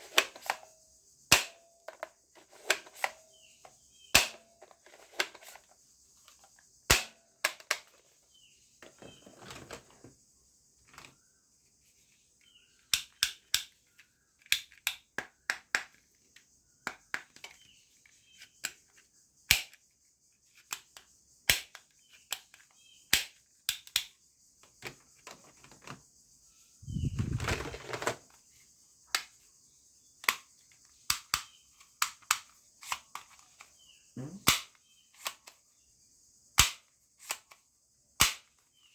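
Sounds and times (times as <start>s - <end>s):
toy guns firing and clicking: 38.2s - 38.6s.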